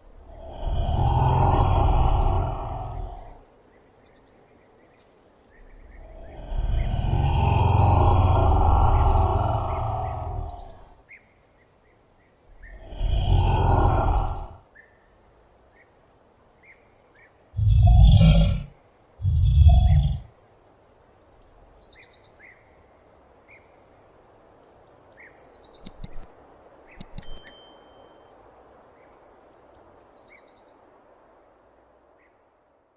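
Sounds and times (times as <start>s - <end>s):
birds chirping faintly: 0.0s - 32.6s
komodo dragon bellowing: 0.2s - 3.4s, 5.8s - 11.0s, 12.5s - 14.6s, 17.6s - 20.3s.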